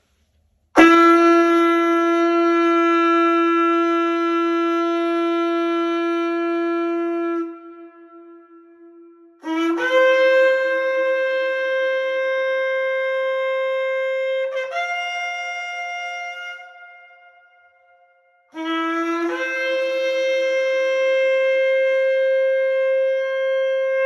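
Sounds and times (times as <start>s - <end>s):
shofar blasts: 0.8s - 17.4s, 18.5s - 24.0s.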